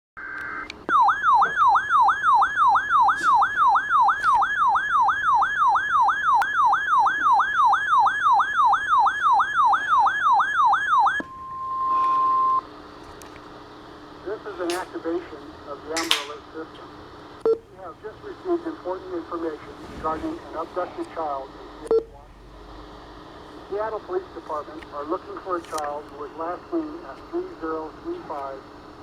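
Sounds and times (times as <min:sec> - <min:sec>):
steady beep tone: 0:00.2 - 0:12.6, 0:18.8 - 0:22.2
siren-like warble alert: 0:00.9 - 0:12.6
faint hiss: 0:14.3 - 0:29.0.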